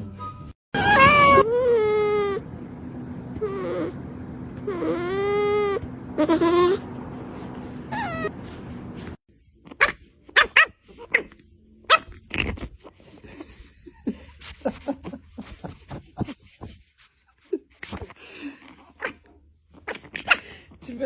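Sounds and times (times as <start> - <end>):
dog whimpering: 0.8 - 2.4, 3.4 - 4.0, 4.6 - 6.9, 7.8 - 8.6
dog yipping: 0.8 - 2.4, 4.7 - 6.8, 7.9 - 8.6, 9.7 - 12.7, 18.9 - 20.6.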